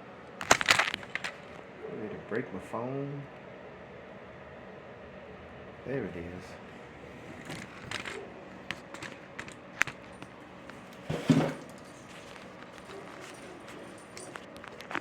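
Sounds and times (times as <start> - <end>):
handling and rummaging noises: 0.3 - 1.6, 7.0 - 15.0.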